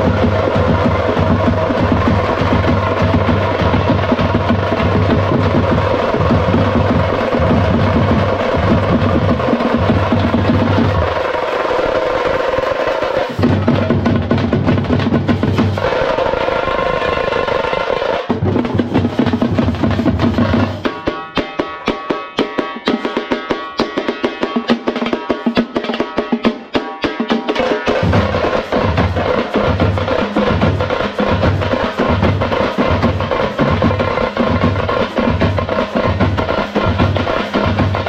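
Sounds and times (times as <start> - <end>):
frame drums beaten with sticks: 0.0 - 38.0.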